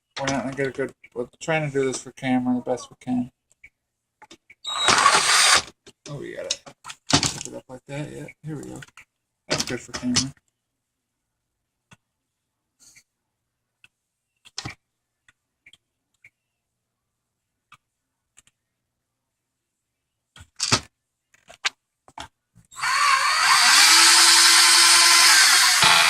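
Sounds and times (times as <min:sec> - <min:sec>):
parts clicking and knocking: 0:04.2 - 0:07.6, 0:20.4 - 0:22.7
power drill-driver whirring: 0:04.7 - 0:05.7, 0:22.8 - 0:26.0.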